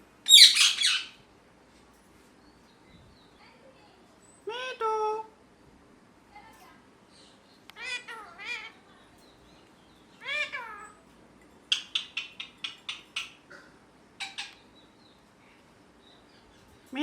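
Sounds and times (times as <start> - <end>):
parakeet sharp chirps: 0.3 - 1.2
parakeet meow-like call: 7.8 - 8.8, 10.2 - 11.0.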